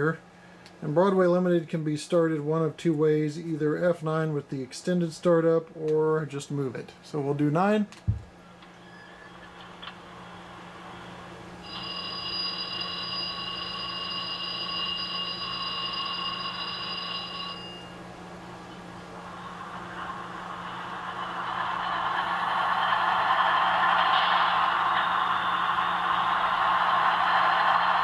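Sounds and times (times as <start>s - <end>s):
steady alarm tone: 11.0s - 28.0s.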